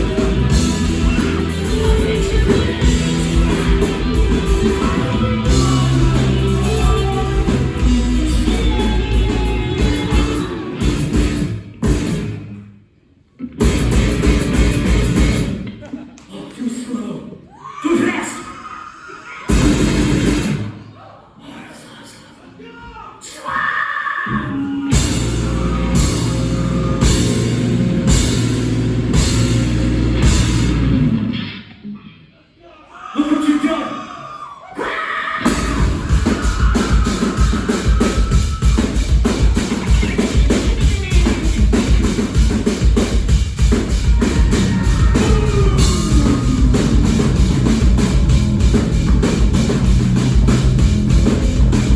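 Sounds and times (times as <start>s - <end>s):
rock band playing live: 0.0s - 12.7s, 13.4s - 15.9s, 19.5s - 20.8s, 24.5s - 31.8s, 35.4s - 51.9s.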